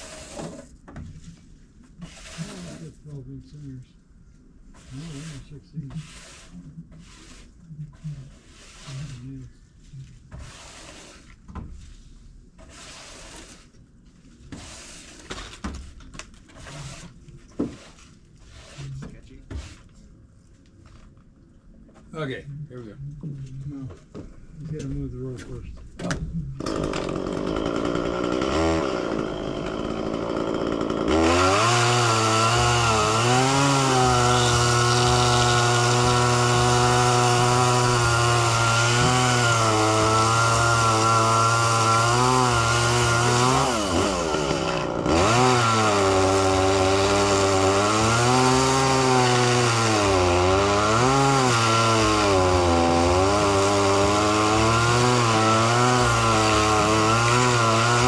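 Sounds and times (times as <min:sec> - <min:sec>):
chainsaw cutting wood: 0:26.6 - 0:58.0.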